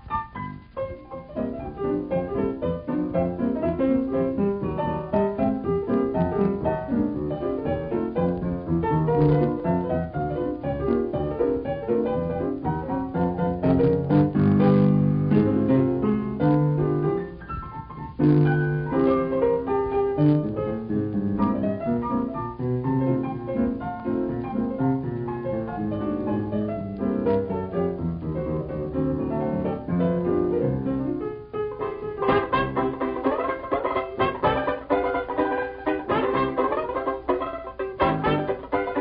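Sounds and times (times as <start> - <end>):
piano music: 0.0 - 39.0.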